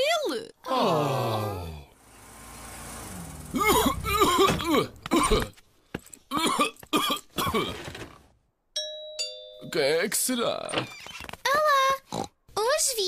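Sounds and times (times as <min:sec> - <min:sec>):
person coughing: 0:03.6 - 0:05.6, 0:06.3 - 0:07.8.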